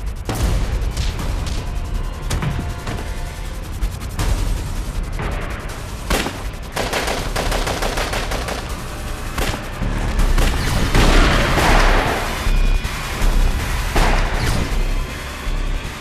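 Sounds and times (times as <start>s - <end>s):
gunshots: 6.0s - 12.5s
automatic weapon fire: 6.1s - 9.7s.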